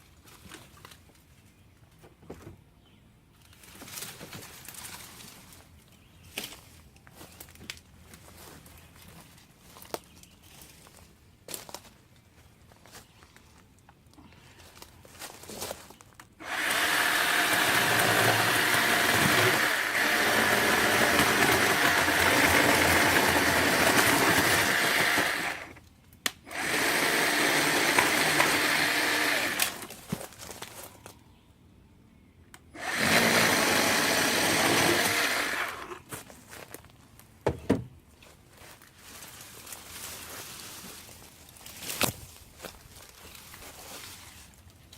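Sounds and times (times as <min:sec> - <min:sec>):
electric chainsaw motor whine: 0:16.4 - 0:25.8, 0:26.5 - 0:29.9, 0:32.8 - 0:36.0.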